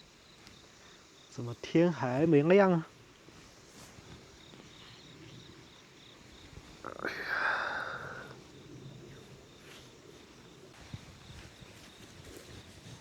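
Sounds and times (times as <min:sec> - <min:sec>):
insects chirping: 0:00.0 - 0:13.0.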